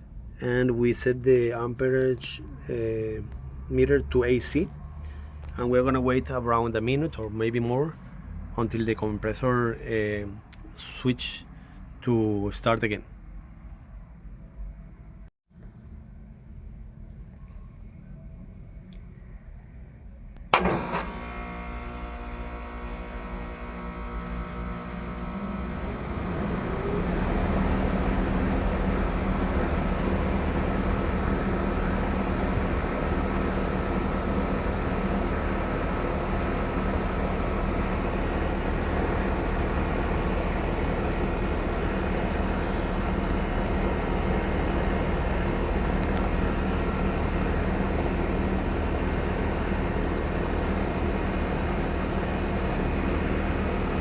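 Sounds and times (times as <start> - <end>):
air conditioner compressor humming: 20.4 - 54.0
condenser fan running: 20.4 - 54.0.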